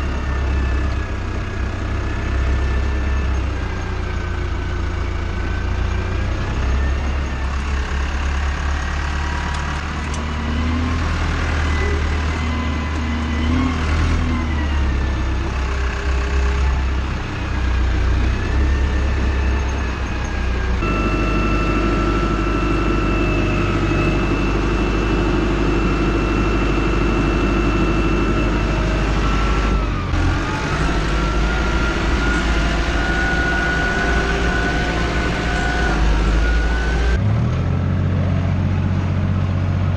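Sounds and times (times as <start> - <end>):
tractor engine running: 0.0 - 39.9
high machinery whine: 11.6 - 37.2.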